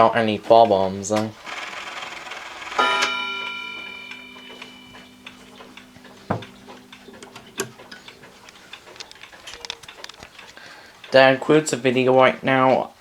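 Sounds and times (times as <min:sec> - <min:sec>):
clock clicks and ticks: 0:00.0 - 0:12.6
wall clock chime: 0:01.4 - 0:11.4.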